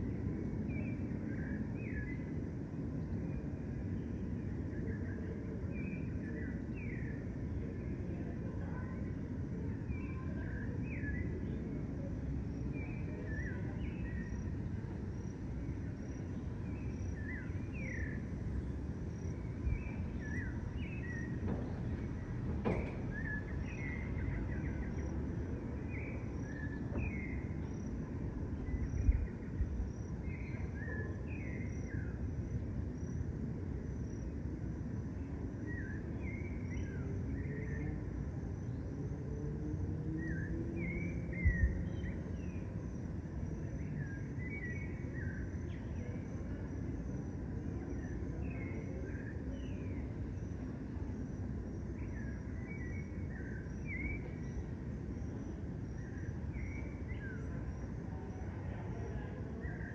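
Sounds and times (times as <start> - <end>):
low background rumble: 9.9 - 36.3
cricket chirping: 12.0 - 59.9
small birds chirping: 15.8 - 27.9.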